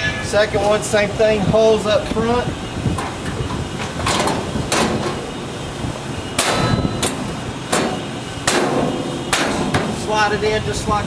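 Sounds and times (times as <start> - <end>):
metal plate clanking against cabinet: 6.4 - 10.1.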